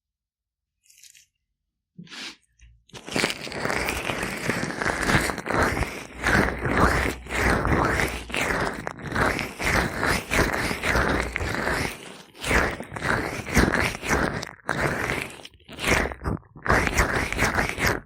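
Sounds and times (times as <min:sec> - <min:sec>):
gloved hands rubbing microphone: 0:02.0 - 0:18.0.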